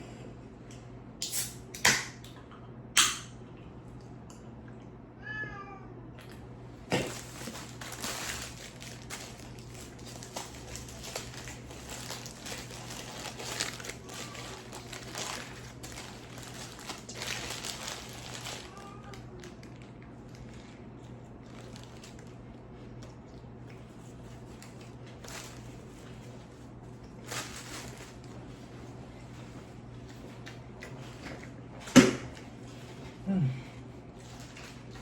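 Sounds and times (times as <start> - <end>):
cat meowing: 5.2 - 6.0, 18.6 - 19.4
paper crinkling and rustling: 6.9 - 23.3, 23.9 - 33.0, 34.1 - 35.0.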